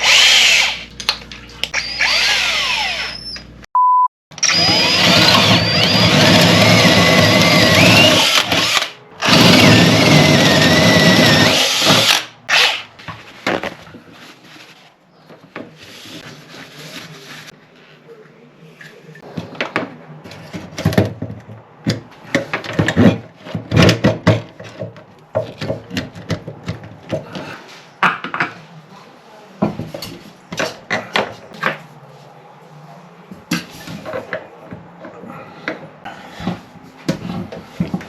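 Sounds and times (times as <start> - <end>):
tools and parts clattering: 19.4 - 27.4.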